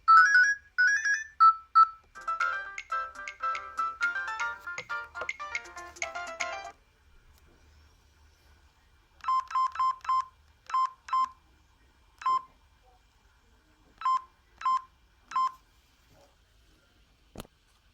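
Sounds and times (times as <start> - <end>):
phone keypad beeps: 0.1 - 3.5, 9.2 - 11.4, 12.2 - 12.5, 14.0 - 15.6.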